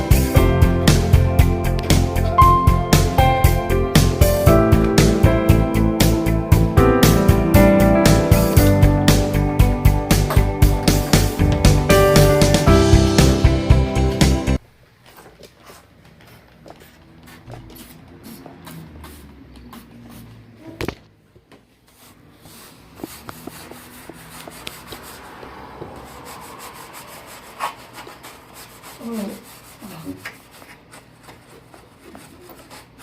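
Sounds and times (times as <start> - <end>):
scrubbing a hard surface: 15.6 - 20.4, 21.8 - 33.0.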